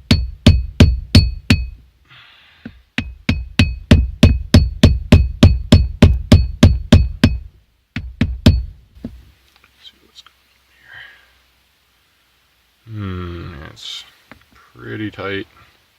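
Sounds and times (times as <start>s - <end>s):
hammer blows on wood and metal: 0.0s - 1.8s, 2.6s - 9.2s.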